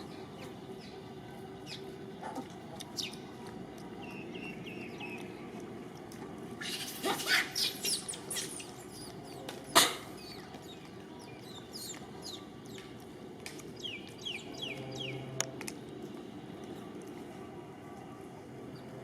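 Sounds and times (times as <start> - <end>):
high animal chirps and squeaks: 6.6 - 10.5.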